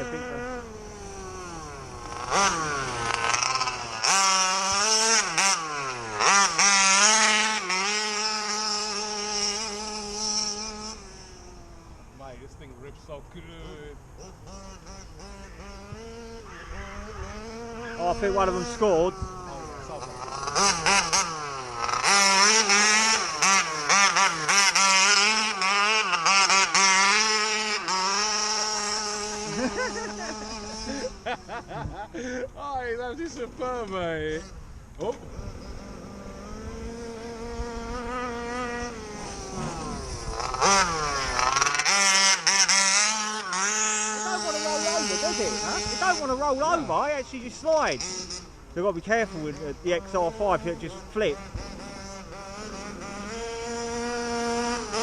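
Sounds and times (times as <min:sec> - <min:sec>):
two-stroke engine revving: 0:00.0 - 0:55.0.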